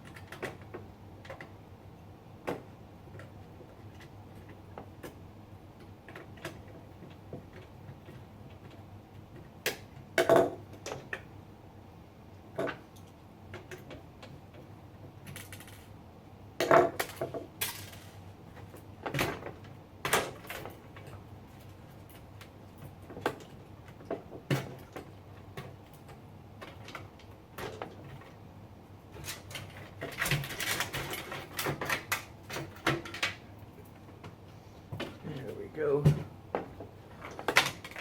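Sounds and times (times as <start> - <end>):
computer hardware clicking and clattering: 0.0 - 1.6, 15.2 - 15.9, 16.6 - 28.4, 29.1 - 34.0, 35.0 - 38.0.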